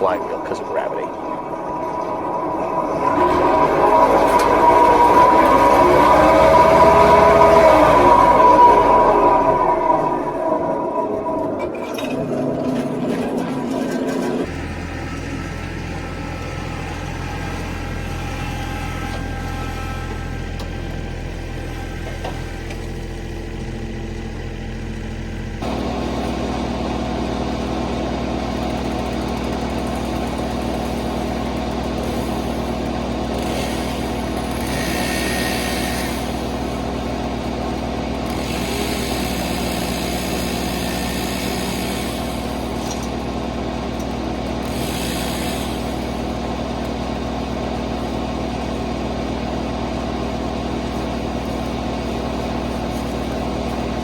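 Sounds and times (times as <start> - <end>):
diesel tractor engine: 0.0 - 54.0
wood chipper chipping saplings: 12.3 - 54.0.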